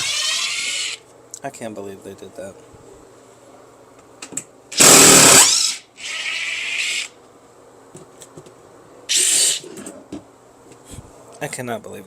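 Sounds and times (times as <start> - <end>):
power drill bursts: 4.8 - 6.4, 9.1 - 9.6.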